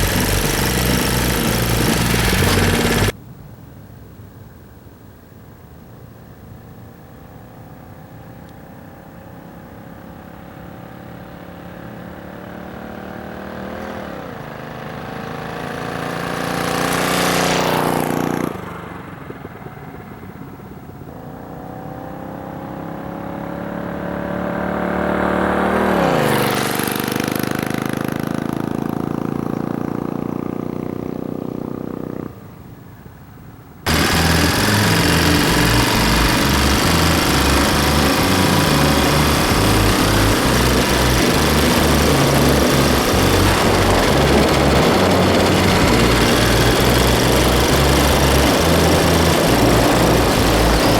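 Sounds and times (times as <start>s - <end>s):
motorized bicycle engine passing: 0.0s - 3.2s, 13.4s - 19.8s, 33.9s - 50.9s.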